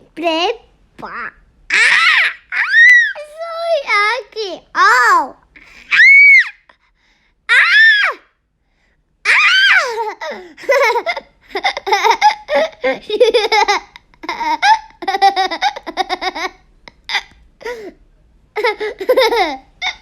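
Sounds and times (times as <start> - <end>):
child squealing: 1.7 - 3.5, 5.9 - 6.7, 7.5 - 8.3, 9.3 - 10.2
child laughing: 1.7 - 3.7, 9.3 - 17.9, 18.6 - 20.0.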